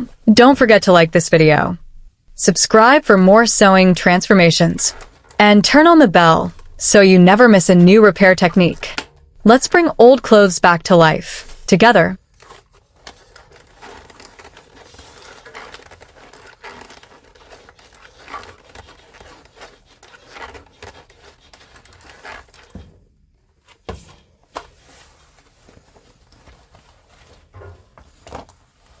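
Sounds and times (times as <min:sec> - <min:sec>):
rustling and crinkling handling: 0:04.7 - 0:05.4, 0:11.4 - 0:29.0.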